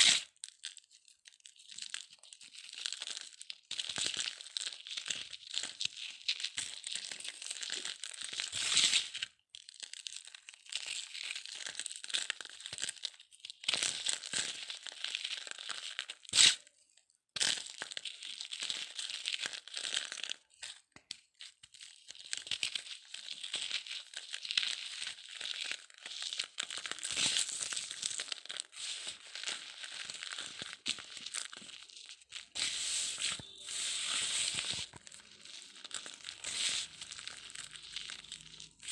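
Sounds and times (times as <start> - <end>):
cement chunks crunching: 23.8 - 38.9.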